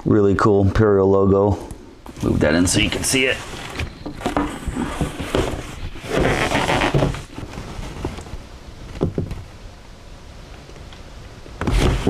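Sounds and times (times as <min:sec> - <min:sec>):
cardboard packaging rustling: 0:02.2 - 0:08.5.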